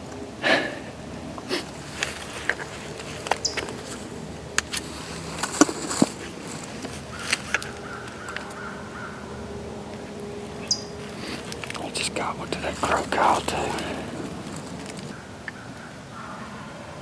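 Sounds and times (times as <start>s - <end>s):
handling clicks: 2.0s - 8.6s
distant turkey gobbling: 6.2s - 17.0s
crow cawing: 6.3s - 17.0s.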